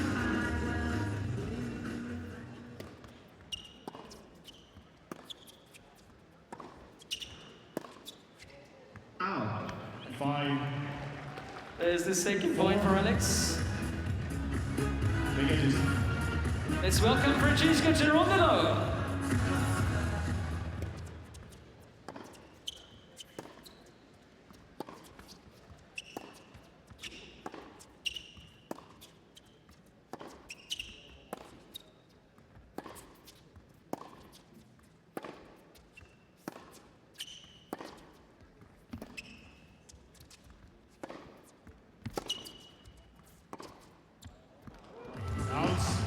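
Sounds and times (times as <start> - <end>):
tennis ball bouncing: 2.6 - 8.2, 12.6 - 23.8, 24.5 - 39.4, 40.1 - 44.0
sneakers squeaking on court: 2.6 - 9.1, 12.6 - 46.0
racket hitting tennis ball: 2.8 - 5.8, 6.5 - 8.2, 12.6 - 23.7, 24.8 - 29.2, 30.1 - 31.8, 32.7 - 34.5, 35.1 - 38.3, 38.9 - 39.4, 40.9 - 44.0.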